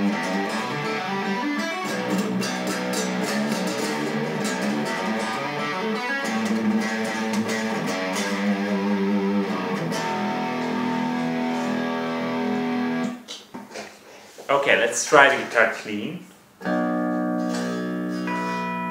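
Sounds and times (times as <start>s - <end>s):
overdriven electric guitar chords: 0.0s - 13.2s, 16.6s - 18.9s.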